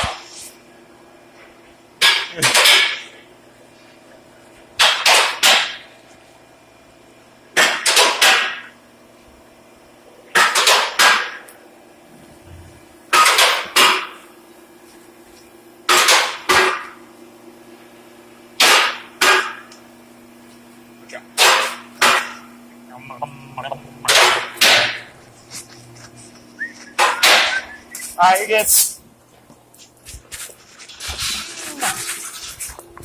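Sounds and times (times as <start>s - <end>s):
lift pump motor humming: 11.6s - 13.1s, 19.7s - 28.2s.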